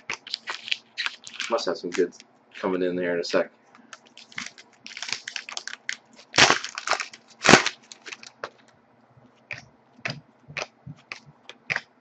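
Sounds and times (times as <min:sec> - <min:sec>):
cards clicking and ticking: 0:09.5 - 0:12.0.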